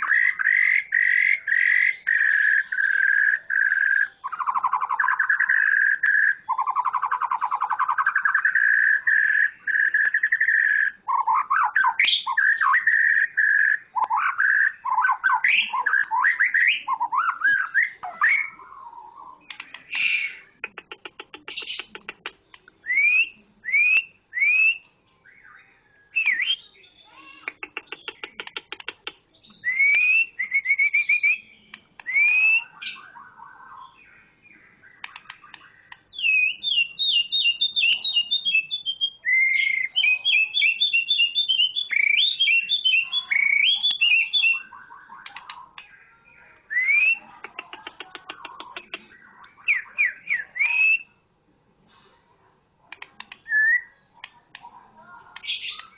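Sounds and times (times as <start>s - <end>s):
bird whistling: 0.0s - 20.5s, 29.6s - 34.0s, 35.0s - 45.5s, 53.4s - 54.0s
bird harsh rattling calls: 19.5s - 22.2s.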